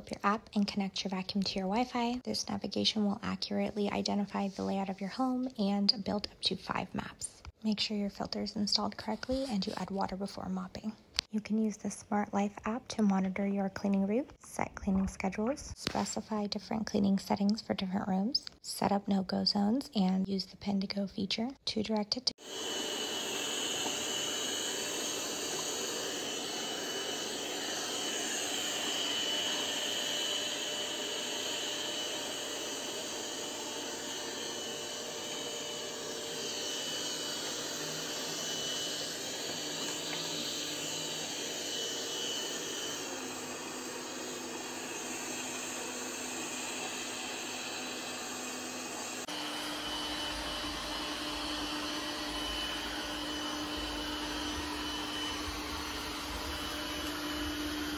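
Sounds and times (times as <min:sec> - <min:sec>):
robot vacuum motor whine: 0:22.4 - 0:57.9.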